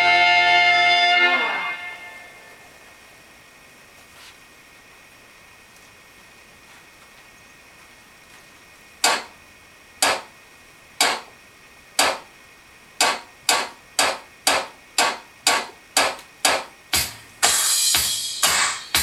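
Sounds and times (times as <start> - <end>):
dry count-in clicks: 12.0 - 12.3, 13.0 - 16.7.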